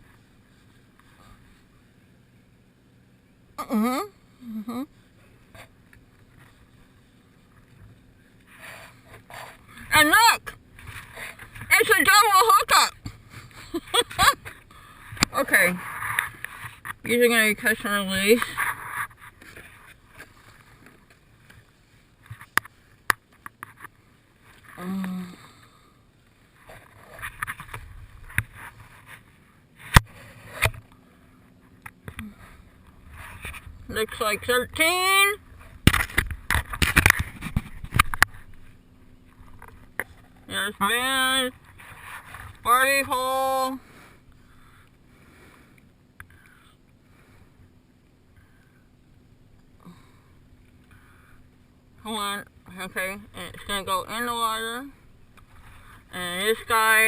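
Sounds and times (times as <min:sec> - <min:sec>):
person humming: 0:03.6 - 0:04.9
fishing gear and hull knocks: 0:35.5 - 0:40.5
faint breathing through nose: 0:49.8 - 0:51.6.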